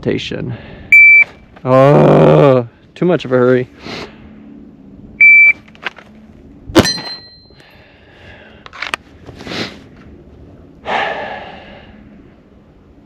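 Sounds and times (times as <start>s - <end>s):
shot timer beep: 1.0s - 1.3s, 5.2s - 5.6s
metallic ring: 6.8s - 7.6s.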